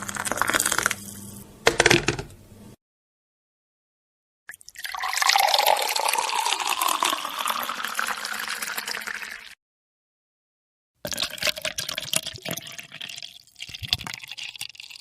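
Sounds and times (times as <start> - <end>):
liquid pouring into container: 4.5 - 9.6, 11.0 - 15.0.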